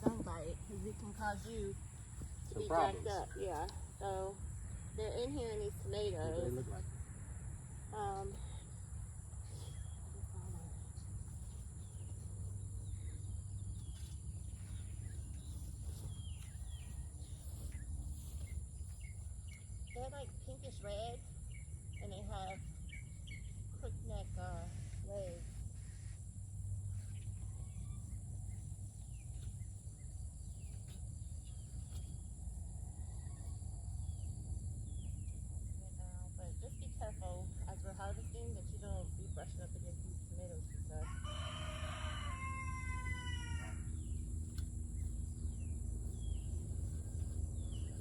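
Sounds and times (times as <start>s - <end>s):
small birds chirping: 0.0s - 6.9s, 7.9s - 48.0s
low steady rumble: 0.0s - 48.0s
insects trilling: 20.7s - 48.0s.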